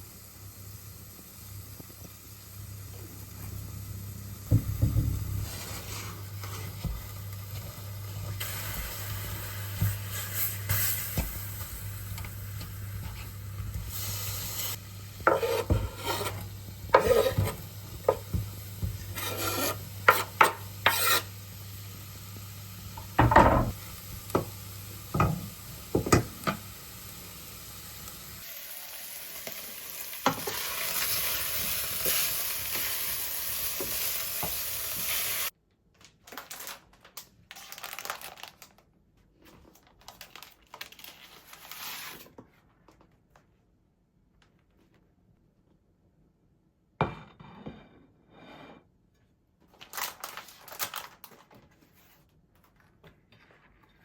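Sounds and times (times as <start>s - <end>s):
food sizzling in a frying pan: 0.0s - 35.6s
utensils scraping a pan: 15.2s - 18.2s, 19.0s - 21.4s.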